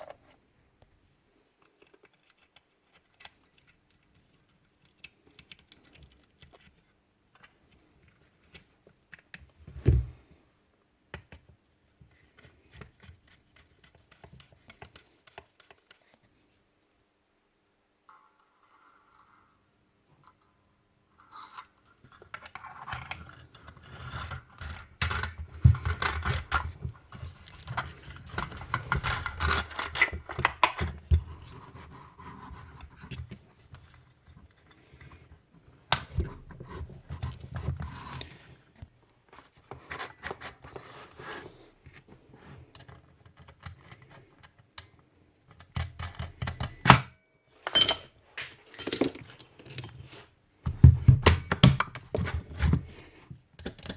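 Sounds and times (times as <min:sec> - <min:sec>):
hand tools scraping and rattling: 0:47.6 - 0:48.1, 0:48.7 - 0:50.1.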